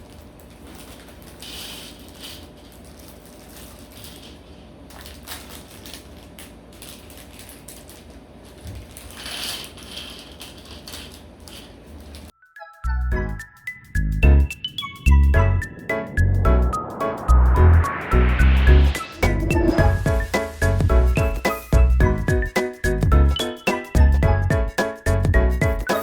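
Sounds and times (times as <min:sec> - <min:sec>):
plastic pieces clicking and rattling: 0:00.0 - 0:12.2
plastic bags crinkling: 0:00.0 - 0:12.3.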